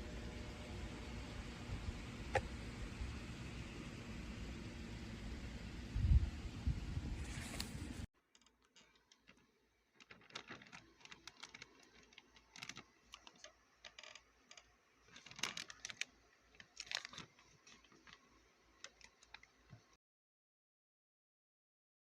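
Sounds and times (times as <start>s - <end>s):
clicks and crinkly rustles: 7.2s - 20.0s
crackles: 7.2s - 20.0s.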